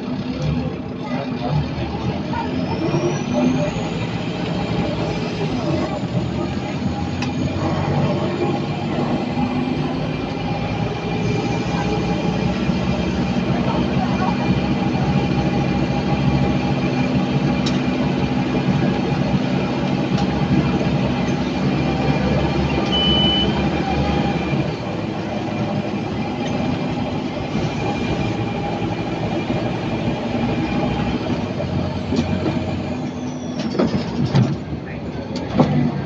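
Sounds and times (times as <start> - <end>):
bus diesel engine humming: 0.0 - 36.0
high turbo whistle: 22.9 - 23.6
short high beep: 22.9 - 23.6.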